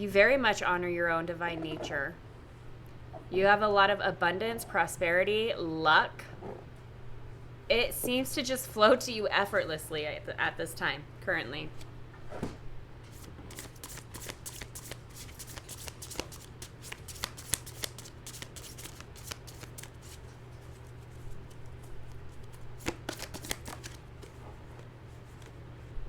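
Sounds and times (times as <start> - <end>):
cards being shuffled: 13.1 - 25.6.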